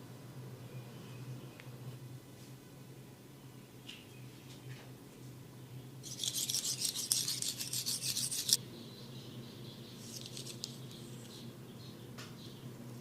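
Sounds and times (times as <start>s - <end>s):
scratchy head massage rubbing: 6.1s - 8.6s.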